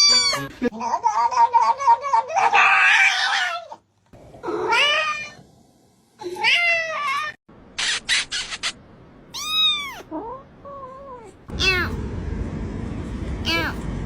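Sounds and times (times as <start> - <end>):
cat meowing: 0.0 - 0.5, 9.3 - 12.0.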